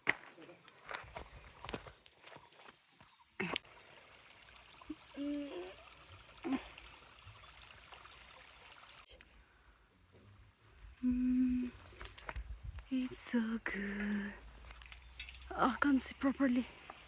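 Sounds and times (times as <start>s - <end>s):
water trickling: 2.4s - 9.3s.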